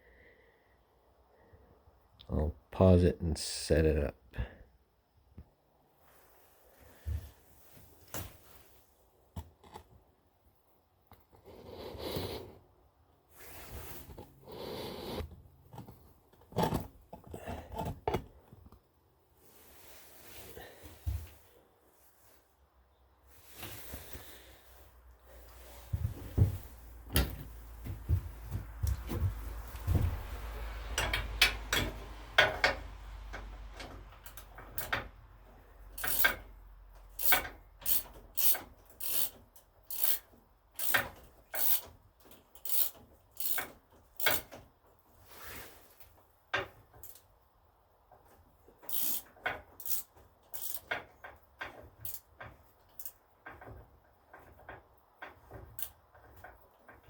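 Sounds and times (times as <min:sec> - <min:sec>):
wrench scraping clicks: 0:35.9 - 0:44.6, 0:46.6 - 0:47.3, 0:48.7 - 0:53.7, 0:55.2 - 0:57.0.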